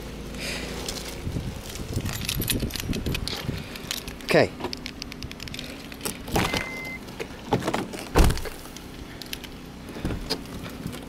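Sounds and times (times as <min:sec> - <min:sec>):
clicks and rustles: 0:00.8 - 0:06.4, 0:07.1 - 0:11.0
car door shutting: 0:06.0 - 0:08.6
short high beep: 0:06.4 - 0:07.0.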